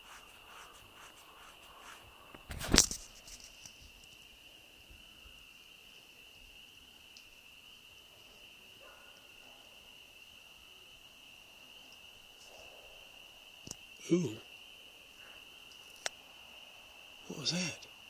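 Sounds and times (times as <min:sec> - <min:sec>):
crickets chirring: 0:00.0 - 0:18.0
faint clicks: 0:07.1 - 0:07.3, 0:13.6 - 0:13.8, 0:15.7 - 0:16.2.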